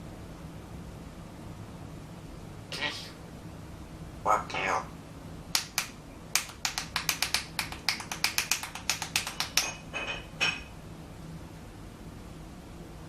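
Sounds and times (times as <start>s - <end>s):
rapid sharp clicks: 5.5s - 9.7s.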